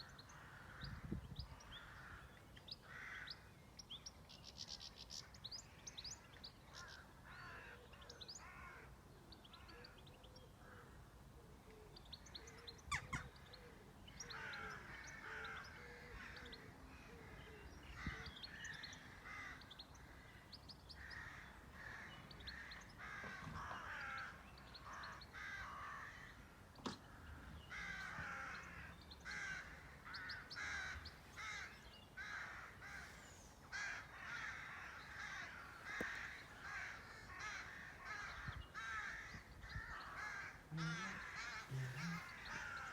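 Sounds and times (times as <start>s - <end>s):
harsh bird calls: 12.2s - 42.9s.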